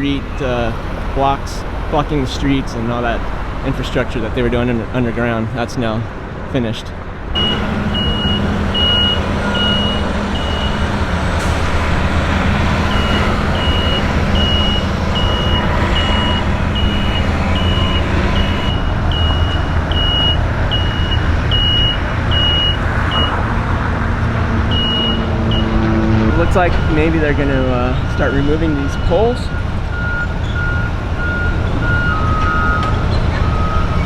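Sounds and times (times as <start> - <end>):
heavy engines and traffic rumble: 0.0 - 34.0
back-up alarm beeping: 7.4 - 10.8, 12.9 - 23.4, 24.7 - 34.0.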